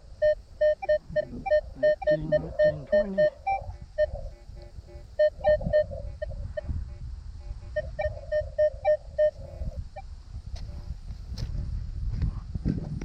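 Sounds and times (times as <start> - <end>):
wind rumble: 0.0 - 13.0
metal detector beeps: 0.2 - 4.2, 4.9 - 6.7, 7.7 - 10.0.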